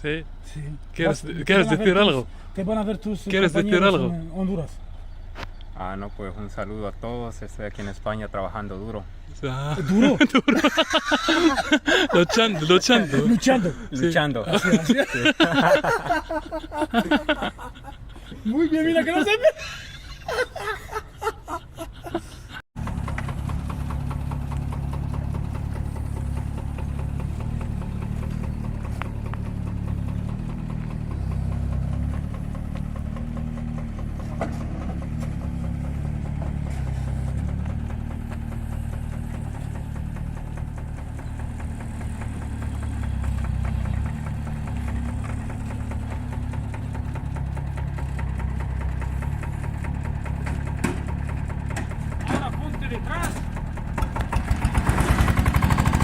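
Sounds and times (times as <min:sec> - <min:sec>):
small diesel engine running: 0:00.0 - 0:56.0.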